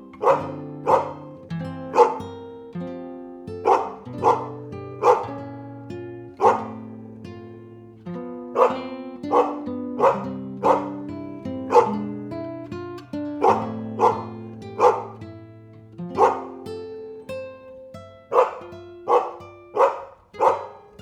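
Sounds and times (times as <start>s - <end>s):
background music with plucked guitar: 0.0s - 21.0s
dog barking: 0.2s - 1.3s, 1.9s - 2.3s, 3.6s - 5.4s, 6.4s - 6.9s, 8.5s - 12.2s, 13.4s - 15.2s, 16.2s - 16.6s, 18.3s - 21.0s.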